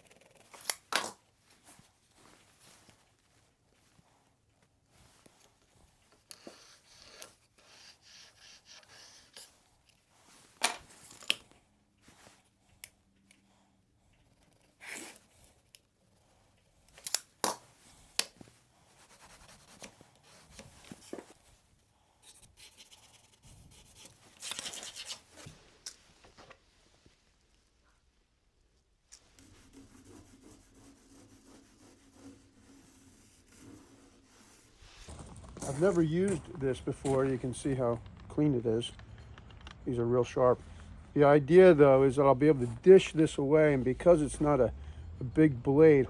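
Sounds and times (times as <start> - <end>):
rustling and scraping: 0.0 - 12.5, 16.9 - 27.3, 29.1 - 44.8.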